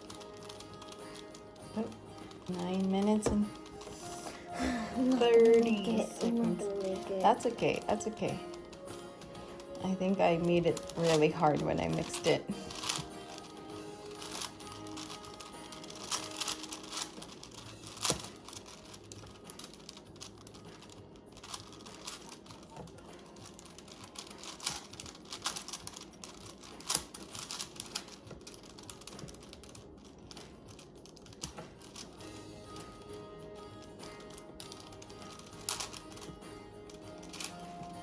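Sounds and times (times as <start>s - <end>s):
faint background music: 0.0s - 38.0s
puzzle cube clicking: 0.0s - 38.0s.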